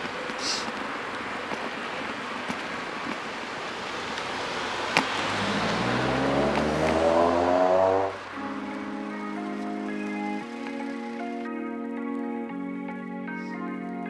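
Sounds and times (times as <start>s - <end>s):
road traffic noise: 0.0s - 11.5s
car engine accelerating past: 3.4s - 10.0s.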